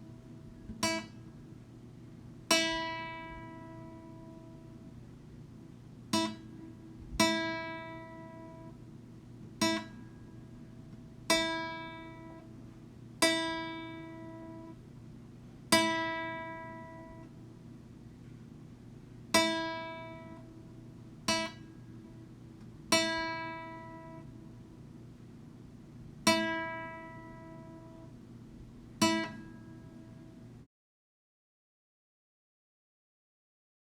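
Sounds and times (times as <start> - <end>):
plucked string notes: 29.0 - 29.5.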